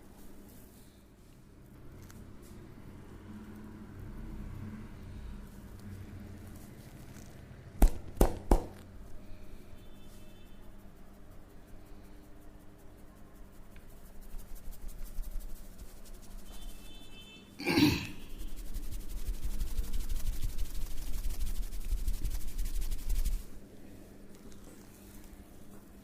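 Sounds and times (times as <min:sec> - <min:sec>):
hands rubbing and slapping skin: 0:05.8 - 0:08.9, 0:10.7 - 0:17.0, 0:18.4 - 0:23.6.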